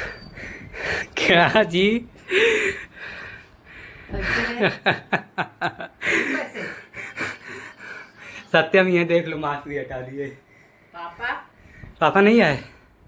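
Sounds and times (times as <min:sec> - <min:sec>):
people talking: 0:04.1 - 0:05.2, 0:06.0 - 0:10.4
people laughing: 0:04.2 - 0:08.1.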